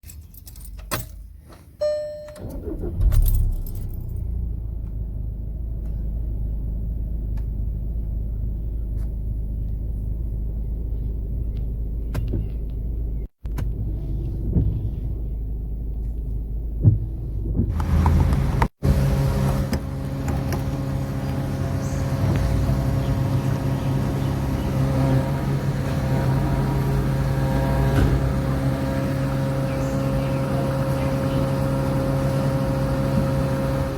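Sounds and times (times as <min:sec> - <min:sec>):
keys jangling: 0:00.0 - 0:01.2, 0:03.0 - 0:04.3
car engine running: 0:02.4 - 0:33.9
road noise: 0:02.4 - 0:33.9.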